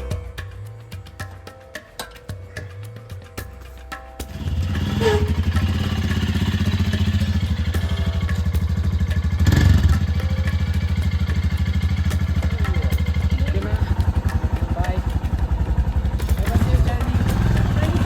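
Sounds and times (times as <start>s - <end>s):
motorcycle engine pulsing beat: 4.3s - 18.0s.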